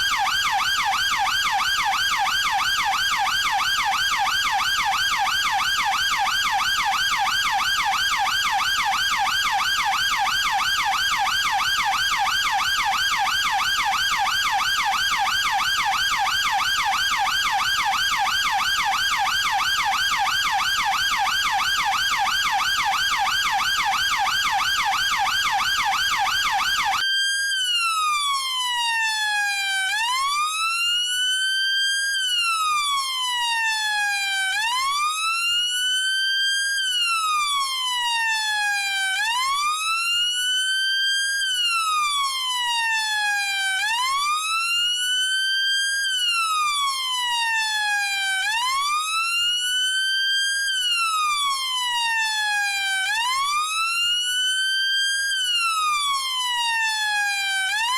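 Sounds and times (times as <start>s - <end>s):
police electronic siren: 0.0s - 57.9s.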